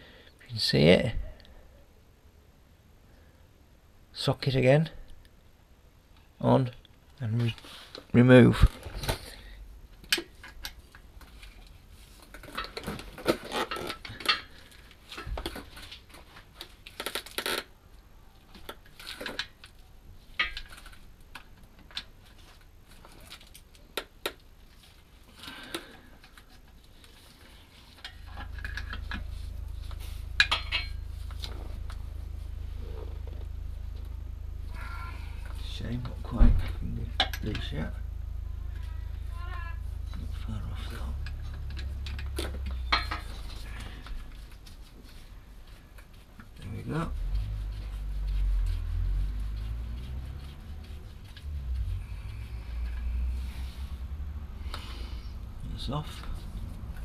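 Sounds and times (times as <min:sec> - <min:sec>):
steady low hum: 0:25.2 - 0:57.0
metal tools clinking: 0:30.2 - 0:31.5, 0:41.2 - 0:43.6.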